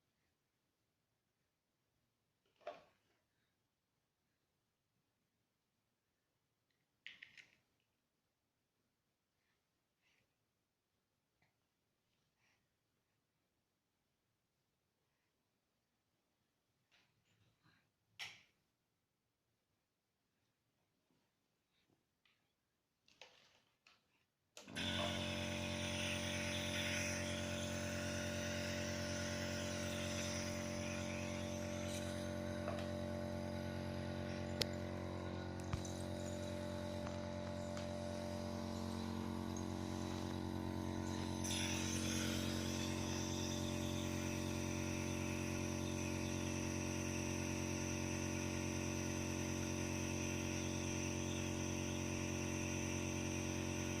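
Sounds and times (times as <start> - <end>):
nebulizer buzzing hum: 24.6 - 54.0
air hissing: 24.7 - 54.0.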